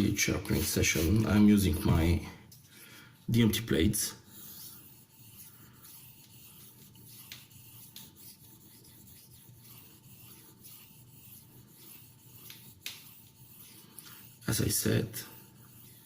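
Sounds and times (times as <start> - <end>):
blade scraping on whetstone: 4.3 - 16.0.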